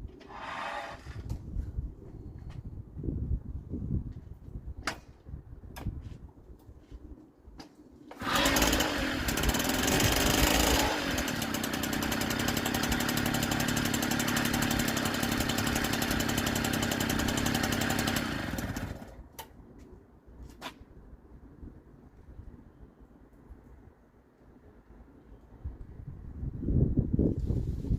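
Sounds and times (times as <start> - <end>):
moped two-stroke engine running: 8.2 - 19.2.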